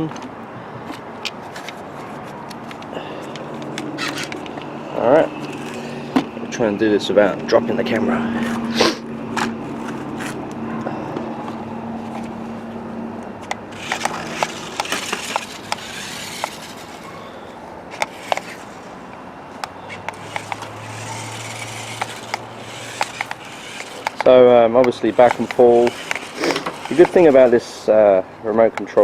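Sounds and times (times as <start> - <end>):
wheels rolling and scraping: 0.0 - 29.0
toy car electric motor hum: 1.6 - 6.2, 13.4 - 19.1, 19.9 - 27.8.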